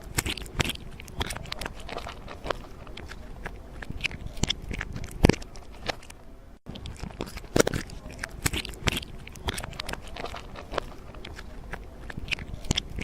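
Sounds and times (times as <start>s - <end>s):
crunching and crackling clicks: 0.0s - 13.0s.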